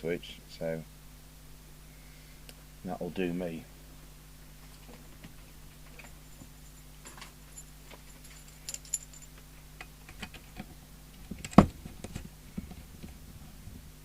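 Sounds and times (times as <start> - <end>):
faint low hum: 0.0 - 14.0
tools clinking on a workbench: 5.9 - 9.4.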